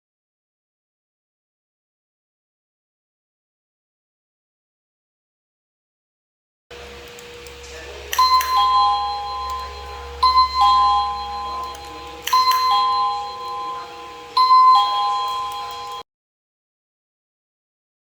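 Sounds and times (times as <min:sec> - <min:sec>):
doorbell click: 0:07.1 - 0:16.0
doorbell ding-dong chime: 0:07.8 - 0:16.0.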